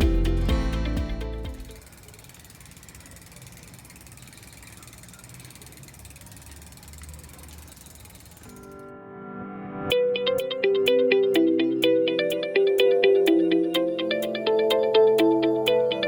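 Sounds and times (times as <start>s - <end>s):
bicycle freewheel ticking: 0.0s - 8.8s.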